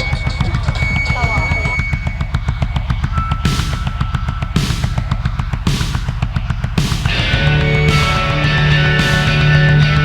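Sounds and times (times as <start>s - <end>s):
fast rock drum hits: 1.8s - 10.0s
sustained guitar chord: 6.8s - 10.0s.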